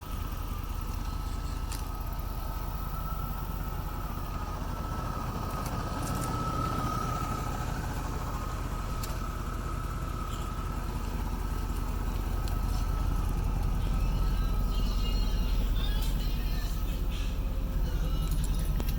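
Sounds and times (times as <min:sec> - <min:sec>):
truck engine idling: 0:00.0 - 0:18.9.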